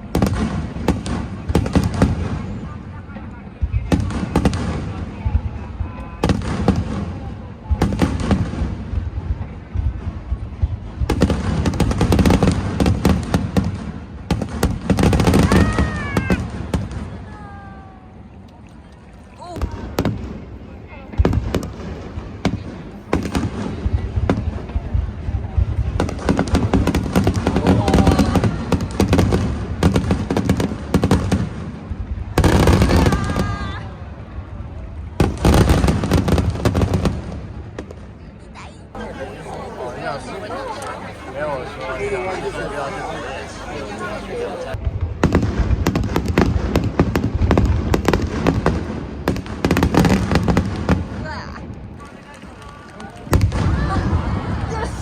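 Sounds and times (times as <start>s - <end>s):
fireworks crackling: 39.0s - 44.8s.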